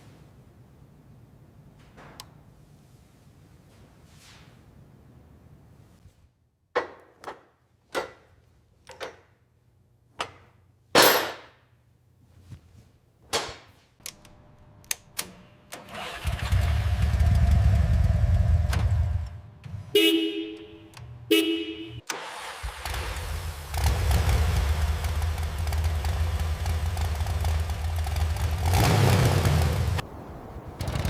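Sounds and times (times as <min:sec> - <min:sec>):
short horn honks: 0:19.9 - 0:22.0
small engine running: 0:22.7 - 0:31.0.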